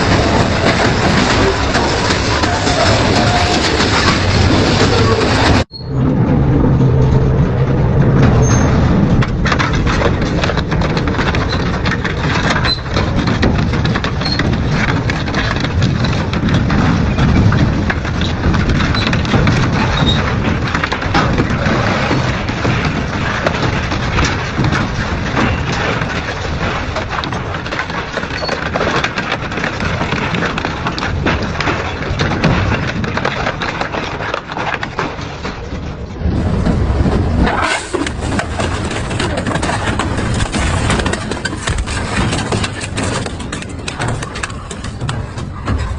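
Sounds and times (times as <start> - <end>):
metal cracking and crunching: 0.0 - 45.9
shredder grinding metal scrap: 36.4 - 45.9.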